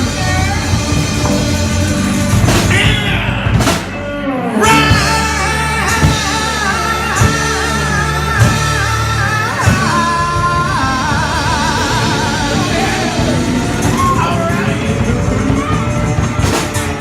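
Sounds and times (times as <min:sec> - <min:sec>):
person singing: 0:00.0 - 0:16.5
live rock band playing: 0:00.0 - 0:17.0
drum hits: 0:00.4 - 0:06.5.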